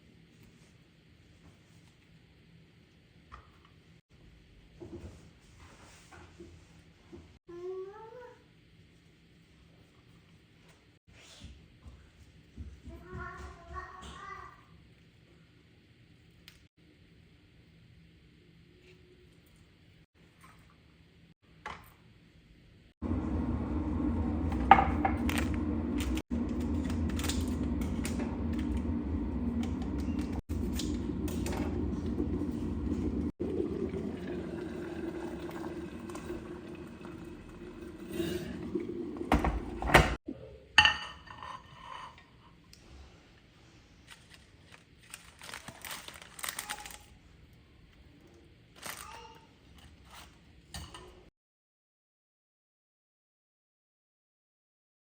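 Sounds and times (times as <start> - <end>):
low motor hum: 23.0 - 40.2
dishes and utensils clinking: 40.8 - 42.6, 50.7 - 51.3.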